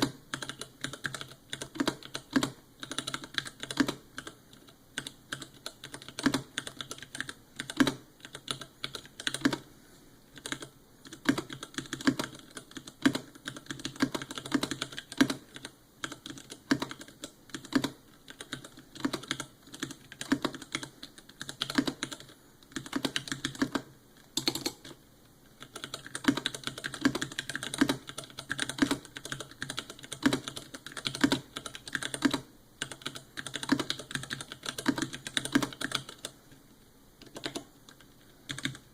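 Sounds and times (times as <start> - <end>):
mechanical keyboard key clacks: 24.4 - 24.9.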